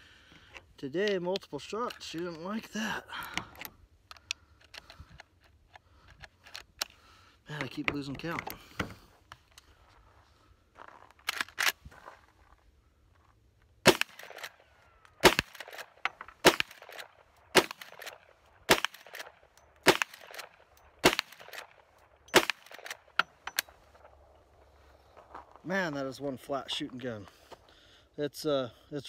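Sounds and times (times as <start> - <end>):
rifle shots: 13.8 - 14.6, 15.2 - 23.3.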